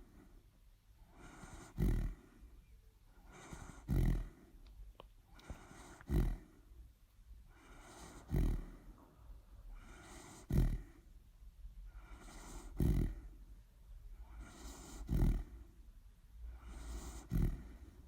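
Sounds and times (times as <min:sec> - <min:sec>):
soft breathing: 0:00.0 - 0:06.8, 0:07.4 - 0:11.2, 0:11.8 - 0:18.0
dog snoring: 0:01.0 - 0:02.4, 0:03.2 - 0:04.5, 0:05.3 - 0:06.6, 0:07.5 - 0:09.0, 0:09.6 - 0:11.1, 0:11.9 - 0:13.4, 0:14.1 - 0:15.7, 0:16.5 - 0:18.0.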